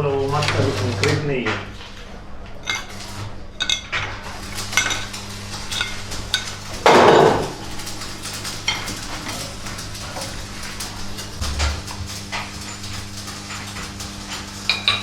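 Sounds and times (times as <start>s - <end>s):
low machine hum: 0.0s - 15.0s
metal scraping: 2.5s - 14.6s
metal tools clinking: 2.6s - 14.1s.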